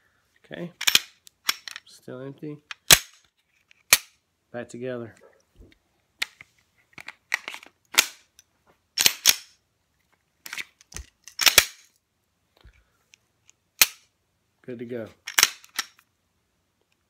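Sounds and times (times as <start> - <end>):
pistol parts clicking: 0.8 - 1.8, 2.7 - 4.2, 7.0 - 9.6, 10.4 - 12.0, 13.4 - 14.1, 15.2 - 16.1.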